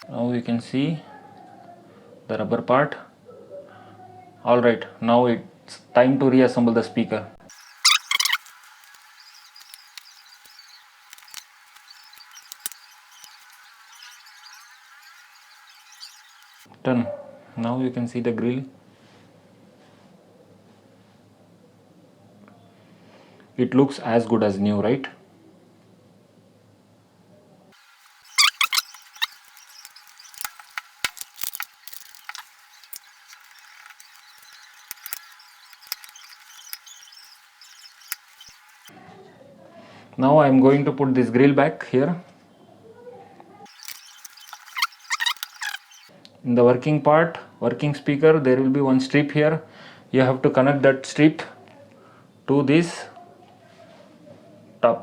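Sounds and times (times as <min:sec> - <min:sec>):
thin high hiss: 0:07.5 - 0:16.7, 0:27.8 - 0:38.9
sharp clicks from handling small parts: 0:28.6 - 0:36.9.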